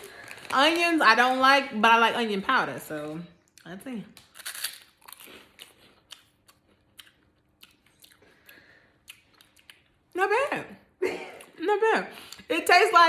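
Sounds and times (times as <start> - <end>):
person crunching snacks: 4.2 - 9.9.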